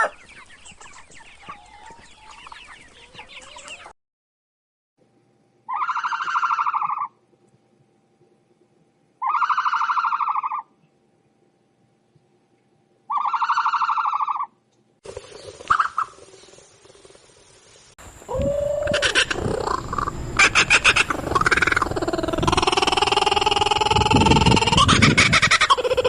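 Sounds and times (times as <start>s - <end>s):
noisy animal sound: 5.7s - 7.2s, 9.2s - 10.8s, 13.1s - 17.4s, 18.0s - 26.0s
bird harsh buzzy calls: 18.0s - 26.0s.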